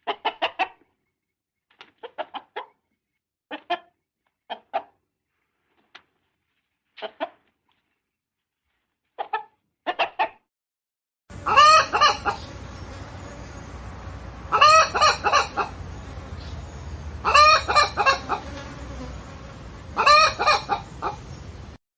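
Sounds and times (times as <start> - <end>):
chicken clucking: 0.0 - 1.0, 1.8 - 2.8, 3.5 - 5.0, 7.0 - 7.5, 9.2 - 10.4, 11.3 - 12.8, 14.5 - 18.6, 19.9 - 21.5
loud drawn-out calls: 11.3 - 13.2, 14.3 - 16.3, 17.2 - 18.5
background hum: 11.3 - 21.8.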